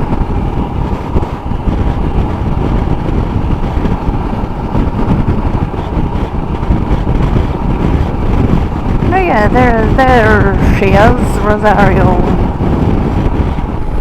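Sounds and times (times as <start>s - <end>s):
motorcycle engine: 0.0s - 14.0s
road noise: 0.0s - 14.0s
wind buffeting microphone: 0.0s - 14.0s.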